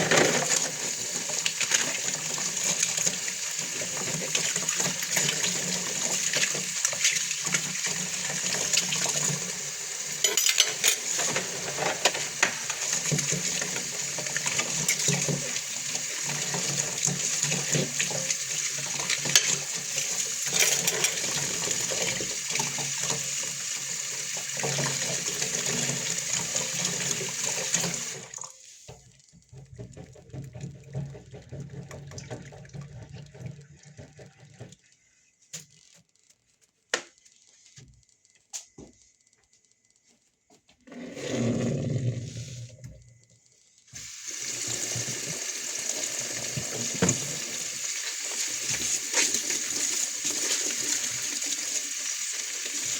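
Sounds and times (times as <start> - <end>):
tap water running into sink: 0.0 - 35.0, 44.0 - 52.9
dishes clinking: 10.2 - 12.7, 20.5 - 21.4.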